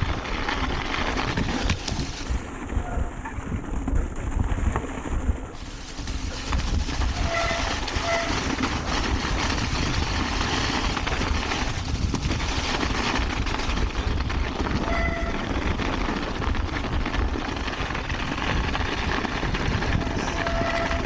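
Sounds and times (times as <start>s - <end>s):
bike rattle: 0.0s - 21.0s
bike tyres rumbling on rough ground: 0.0s - 21.0s
wind: 0.0s - 21.0s
brakes squealing: 5.6s - 12.8s, 20.0s - 21.0s.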